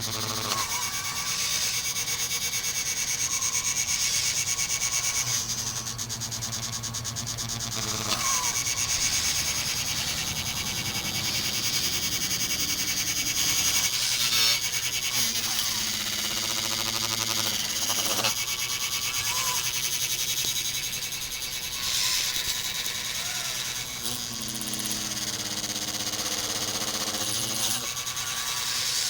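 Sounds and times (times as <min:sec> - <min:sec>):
small electric motors whining: 0:00.0 - 0:29.0
low hum: 0:00.3 - 0:25.2.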